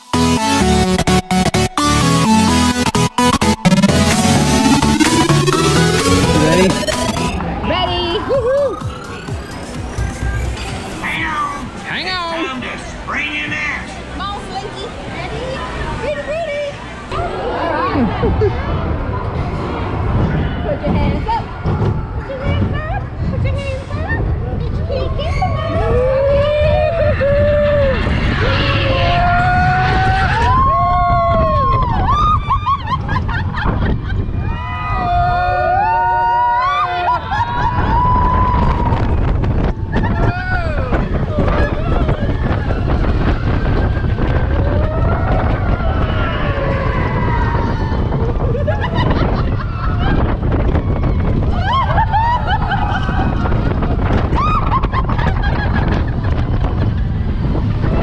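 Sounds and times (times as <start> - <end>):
roller coaster rumbling: 0.0 - 58.0
riders screaming and whooping: 6.4 - 9.7, 24.2 - 58.0
wind rushing on microphone: 14.2 - 58.0.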